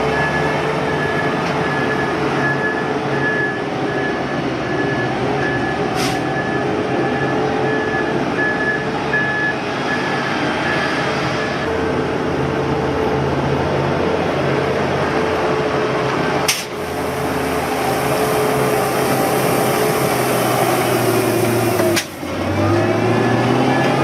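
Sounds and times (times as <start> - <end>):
construction machinery engine running: 0.0 - 24.0.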